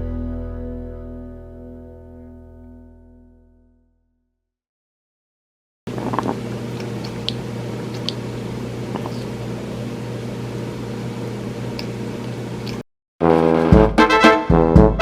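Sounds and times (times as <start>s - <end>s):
fan humming: 5.9s - 12.8s.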